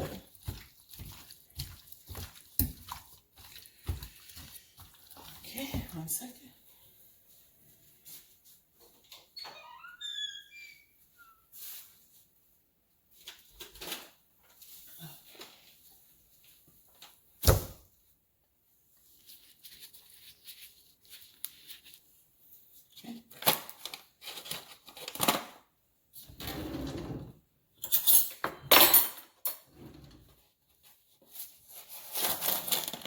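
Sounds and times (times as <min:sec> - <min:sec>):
kitchen utensils clicking and rustling: 0:27.8 - 0:30.4, 0:31.8 - 0:33.0.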